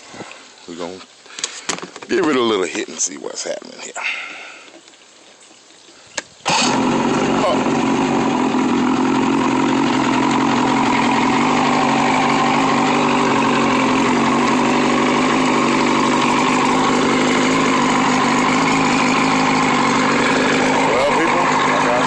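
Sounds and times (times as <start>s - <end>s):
boat engine idling: 6.5s - 22.0s.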